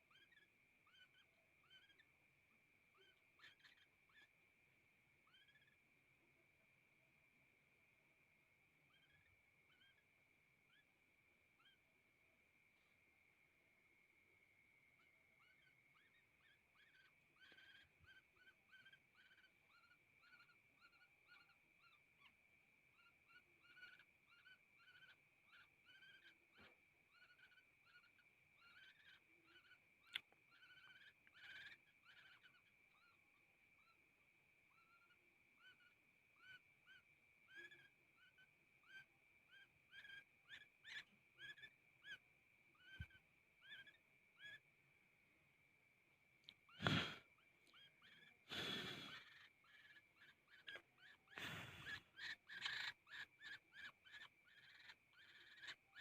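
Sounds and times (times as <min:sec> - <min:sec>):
young woodpecker chirping: 0:00.0 - 0:04.5, 0:05.2 - 0:05.9, 0:08.8 - 0:11.9, 0:14.9 - 0:44.8, 0:46.5 - 0:56.0.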